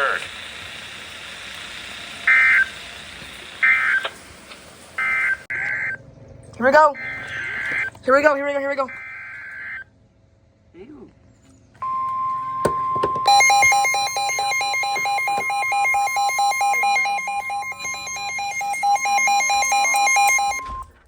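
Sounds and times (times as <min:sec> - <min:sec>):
electronic alarm warbling beeps: 0:02.2 - 0:03.0, 0:03.6 - 0:04.2, 0:05.0 - 0:06.0, 0:06.6 - 0:09.9, 0:11.8 - 0:20.9
steady warning alert tone: 0:11.8 - 0:20.9.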